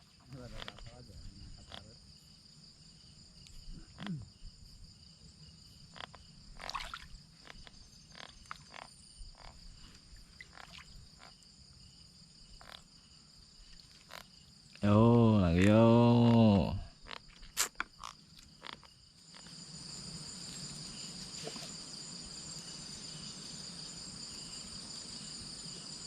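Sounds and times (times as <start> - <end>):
frogs calling: 0.0 - 2.0, 5.8 - 11.6, 12.4 - 19.8
high insect trill: 0.0 - 26.0.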